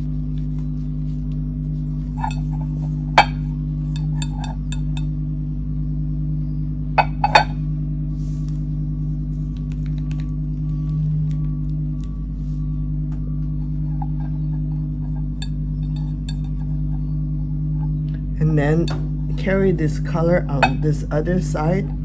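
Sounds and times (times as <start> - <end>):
steady low hum: 0.0 - 22.0
brush clinking on ceramic palette: 2.0 - 5.1, 14.0 - 17.1.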